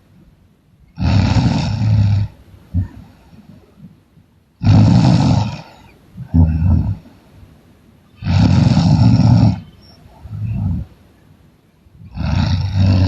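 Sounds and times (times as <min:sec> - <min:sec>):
person snoring loudly: 0:01.0 - 0:03.0, 0:04.6 - 0:07.0, 0:08.2 - 0:09.7, 0:10.3 - 0:10.9, 0:12.0 - 0:13.0.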